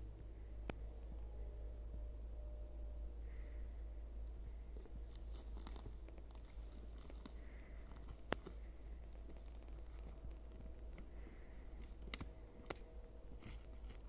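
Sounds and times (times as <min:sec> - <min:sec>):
low steady rumble: 0:00.0 - 0:14.0
rustling: 0:04.5 - 0:14.0.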